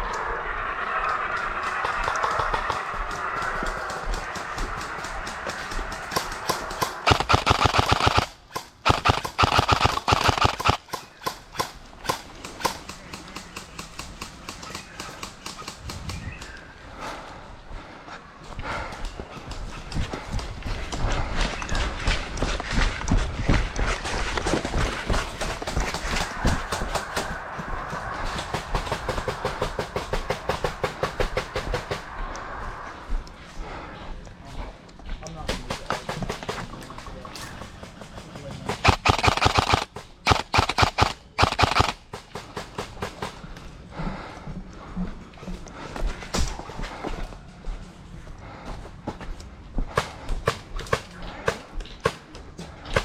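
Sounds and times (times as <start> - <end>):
airsoft guns firing: 1.8 - 15.9, 37.7 - 43.4
airsoft gun firing full-auto: 6.2 - 10.8, 38.8 - 42.0.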